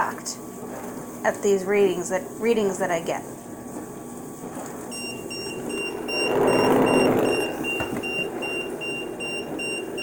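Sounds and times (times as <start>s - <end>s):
white noise hiss: 0.0s - 10.0s
high-pitched alarm beeping: 4.9s - 10.0s.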